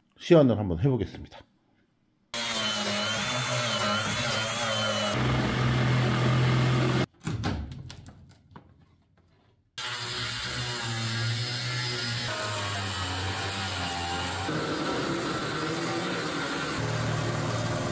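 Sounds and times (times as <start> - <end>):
power tools running: 2.4 - 7.1, 9.8 - 17.9.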